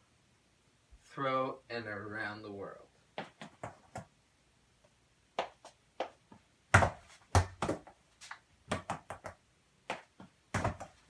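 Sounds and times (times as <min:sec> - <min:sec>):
soccer ball kicked: 0:06.7 - 0:07.8, 0:09.9 - 0:10.9.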